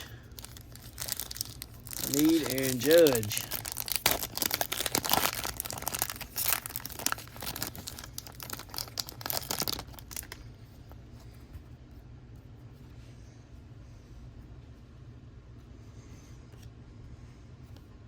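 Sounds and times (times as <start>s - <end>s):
faint steady hum: 0.0s - 18.0s
wrapper crinkling: 0.1s - 10.5s.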